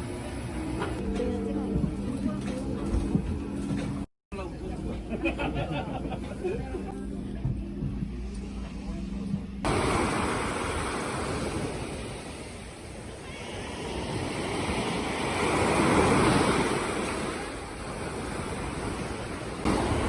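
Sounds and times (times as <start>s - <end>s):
sea waves washing ashore: 9.6s - 20.0s.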